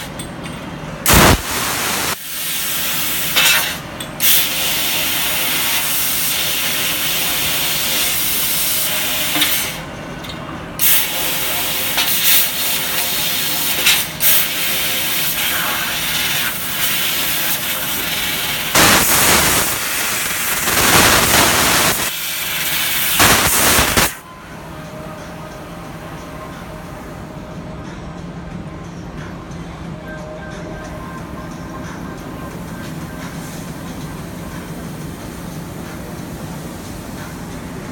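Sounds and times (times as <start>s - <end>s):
laser cutter gas hissing: 1.1s - 9.8s, 10.8s - 24.2s.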